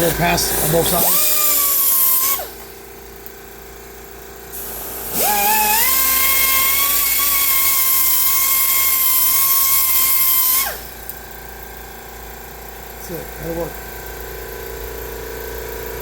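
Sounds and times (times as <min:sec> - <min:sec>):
electric grinder whining: 0:00.0 - 0:02.9, 0:04.5 - 0:11.2
grinding wheel hissing on metal: 0:00.0 - 0:03.0, 0:04.1 - 0:16.0.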